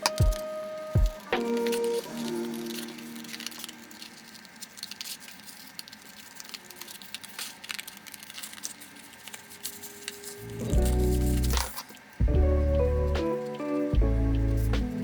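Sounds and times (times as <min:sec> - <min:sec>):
art tools tapping on paper: 0:00.0 - 0:01.9
music: 0:00.0 - 0:04.4, 0:10.0 - 0:15.0.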